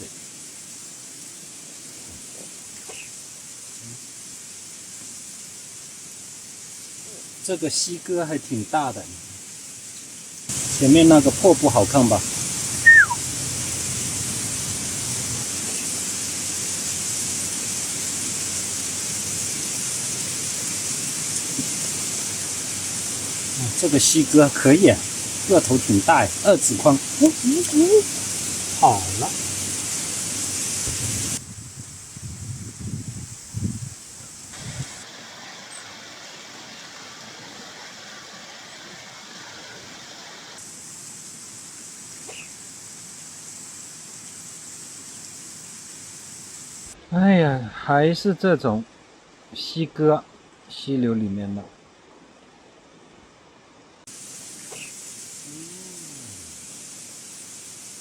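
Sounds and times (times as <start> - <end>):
rushing stream: 4.4 - 31.4, 34.0 - 47.0.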